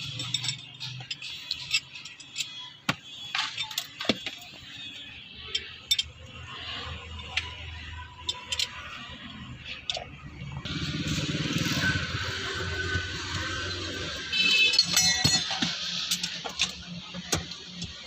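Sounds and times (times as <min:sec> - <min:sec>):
hand tools clinking on metal: 0:00.0 - 0:04.6, 0:14.6 - 0:18.0.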